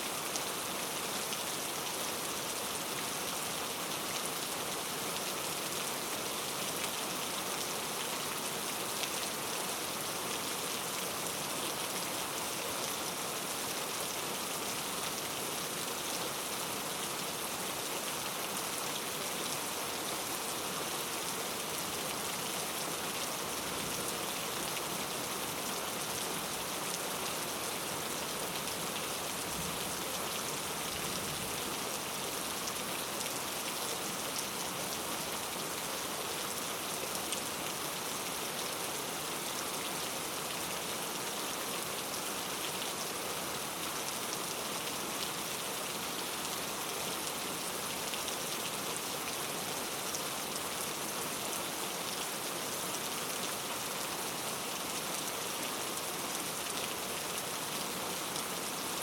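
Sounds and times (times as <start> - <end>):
rain on foliage: 0.0 - 59.0.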